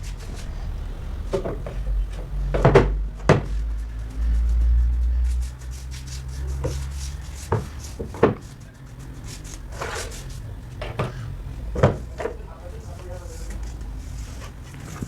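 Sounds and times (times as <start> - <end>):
low motor hum: 0.0 - 15.0
rubbing scrape: 0.0 - 15.0
hard wooden knocks: 1.2 - 3.7, 6.6 - 9.0, 9.6 - 12.5.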